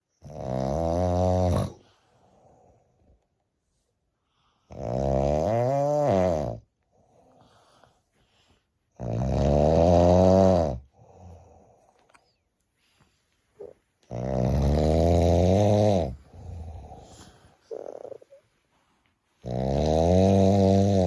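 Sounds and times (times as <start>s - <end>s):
person snoring loudly: 0.2s - 1.8s, 4.7s - 6.6s, 9.0s - 10.9s, 13.6s - 18.3s, 19.4s - 21.0s
breathing: 1.8s - 4.8s, 6.8s - 9.0s, 10.8s - 13.8s, 16.1s - 19.4s.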